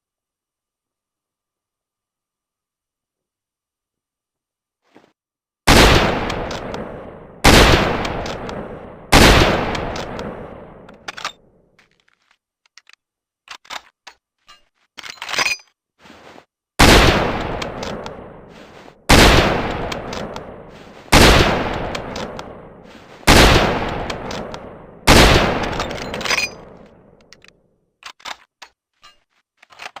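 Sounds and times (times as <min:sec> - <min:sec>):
rifle shots with echoing tail: 0:05.7 - 0:11.1, 0:16.8 - 0:27.2
metallic clicks: 0:09.7 - 0:15.8, 0:25.6 - 0:30.0.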